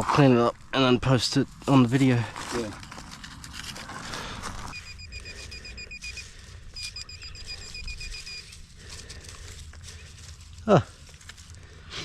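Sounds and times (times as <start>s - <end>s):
rustling scrape: 1.9s - 4.8s
metal detector beeping: 4.7s - 8.7s.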